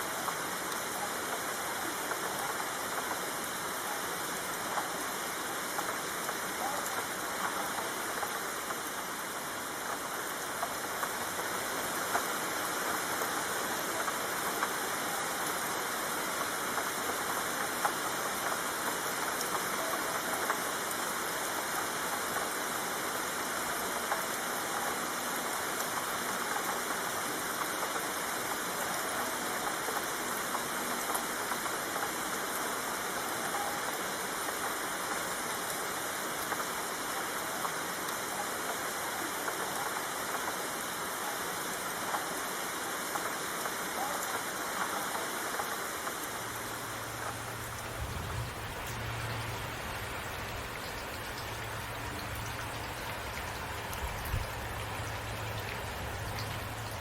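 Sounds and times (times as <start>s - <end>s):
rain hissing: 0.0s - 57.0s
drops ticking: 47.0s - 57.0s.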